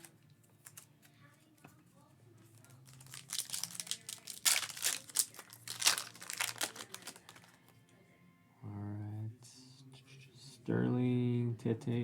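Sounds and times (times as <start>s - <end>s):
foil wrapper crinkling and tearing: 0.0s - 0.9s, 2.6s - 7.6s.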